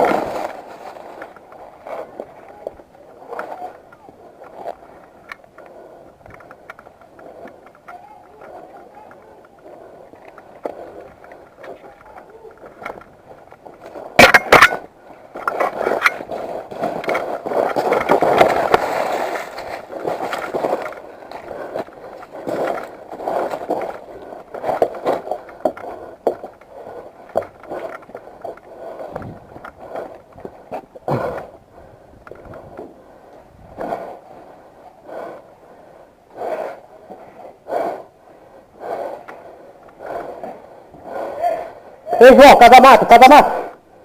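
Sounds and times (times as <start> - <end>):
sharp cracks: 0.0 - 31.6.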